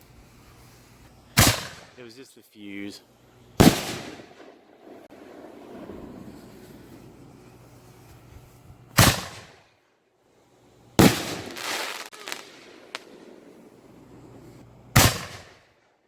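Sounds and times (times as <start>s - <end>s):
firework crackle: 0.0s - 9.8s, 10.8s - 15.8s
loud firework bangs: 1.4s - 2.0s, 3.6s - 9.7s, 11.0s - 15.7s.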